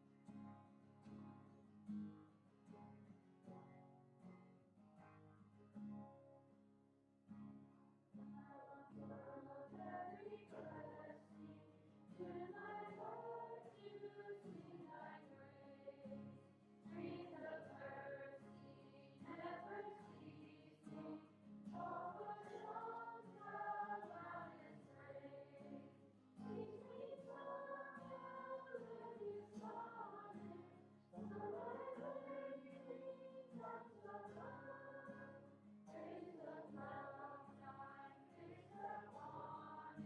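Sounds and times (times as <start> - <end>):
voices singing a worship song: 8.4 - 40.0.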